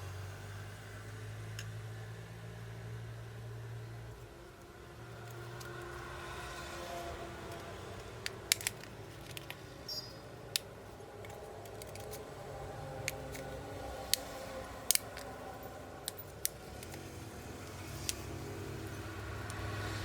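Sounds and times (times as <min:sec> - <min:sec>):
low background hum: 0:00.0 - 0:20.0
hand tools clicking and snapping: 0:07.5 - 0:09.6, 0:10.5 - 0:12.3, 0:13.0 - 0:15.4.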